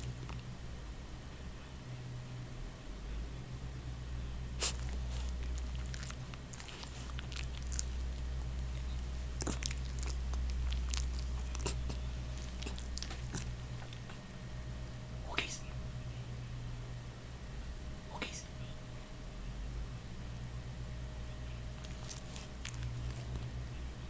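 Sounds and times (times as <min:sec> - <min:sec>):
dog mouth clicks and smacks: 0:00.0 - 0:00.5, 0:04.6 - 0:14.2, 0:15.3 - 0:15.6, 0:21.8 - 0:23.5
steady low hum: 0:00.0 - 0:24.0.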